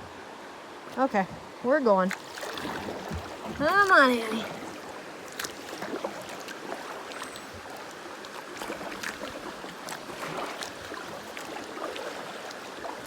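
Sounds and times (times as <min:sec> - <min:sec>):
sharp water splashes: 0:02.0 - 0:13.0
river rapids rushing: 0:03.6 - 0:04.7.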